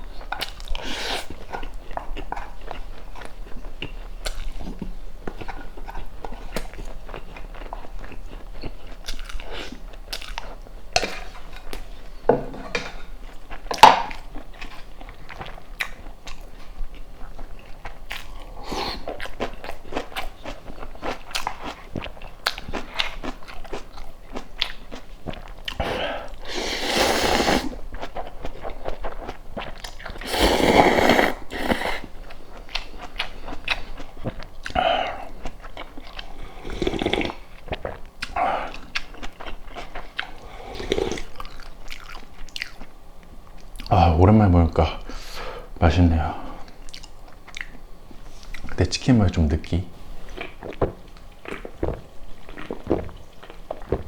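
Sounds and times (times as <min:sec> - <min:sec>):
biting and chewing food: 0:12.8 - 0:43.9, 0:50.2 - 0:54.0
wet mouth clicks: 0:30.2 - 0:32.1.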